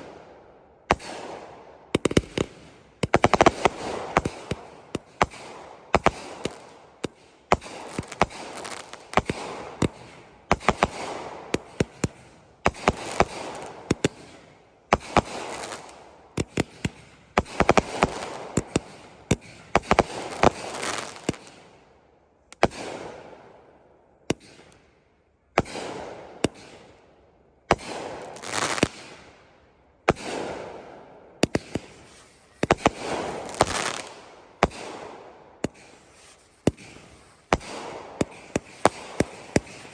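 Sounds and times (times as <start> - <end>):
fireworks banging: 2.0 - 21.7, 30.1 - 39.9
firework hiss: 31.6 - 34.3, 35.7 - 39.9.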